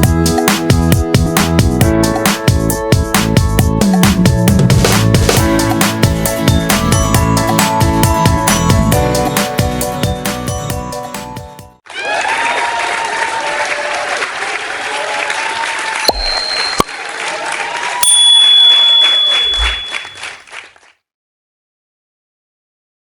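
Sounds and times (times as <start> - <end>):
crowd applauding: 11.8 - 18.3, 19.0 - 20.9
people cheering: 11.8 - 20.6
brief high steady tones: 16.1 - 17.0, 18.0 - 20.4.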